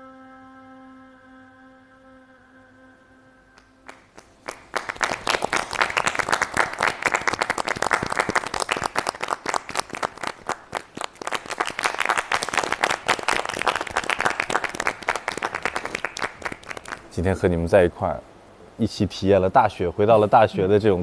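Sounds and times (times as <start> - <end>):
people applauding: 3.8 - 17.1.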